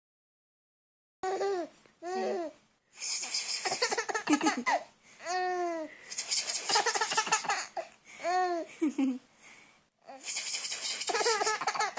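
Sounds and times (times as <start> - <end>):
baby laughing: 3.4 - 9.2, 10.1 - 11.9.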